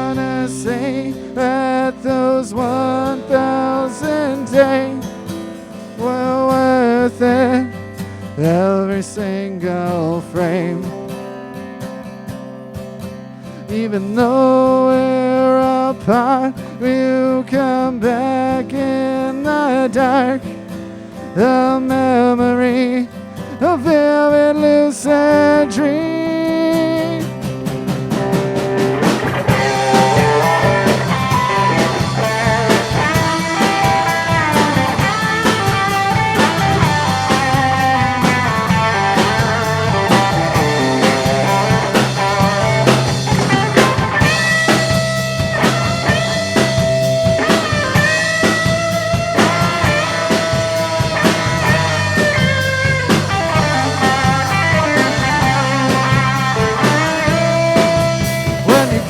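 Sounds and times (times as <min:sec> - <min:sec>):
drum kit: 0:00.0 - 0:09.0, 0:23.4 - 0:59.0
bass guitar: 0:00.0 - 0:59.0
electric guitar solo: 0:25.0 - 0:59.0.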